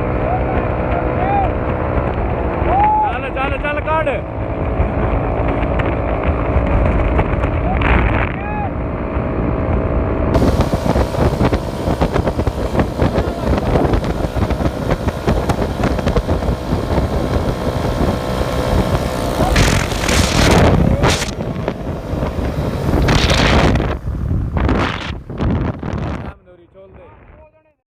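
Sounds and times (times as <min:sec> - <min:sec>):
tractor engine running hard: 0:08.7 - 0:26.0
wind buffeting microphone: 0:09.1 - 0:26.4.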